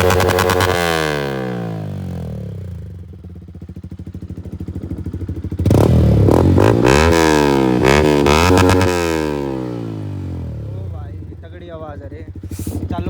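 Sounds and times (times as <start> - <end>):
motorcycle idling: 0.0 - 13.0
motorcycle throttle blips: 0.0 - 13.0.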